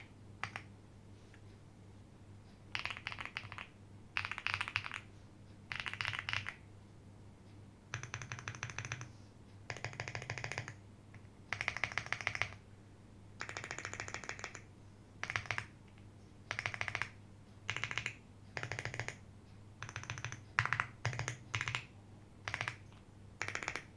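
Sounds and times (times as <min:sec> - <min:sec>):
clicky keyboard typing: 0:00.0 - 0:00.7, 0:02.7 - 0:05.1, 0:05.7 - 0:06.6, 0:07.9 - 0:09.1, 0:09.7 - 0:12.6, 0:13.4 - 0:14.6, 0:15.2 - 0:19.2, 0:19.8 - 0:23.9.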